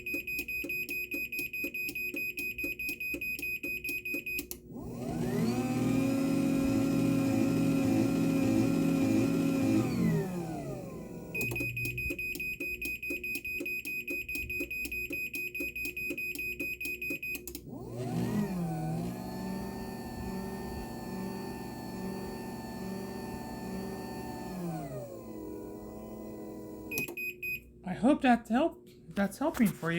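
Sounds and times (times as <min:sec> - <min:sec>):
garage door motor running: 0:04.6 - 0:12.2, 0:17.6 - 0:27.1.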